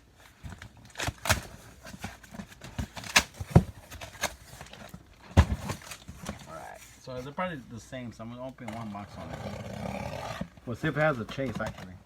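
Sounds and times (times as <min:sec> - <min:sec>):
cardboard box rustling: 0:00.2 - 0:07.4.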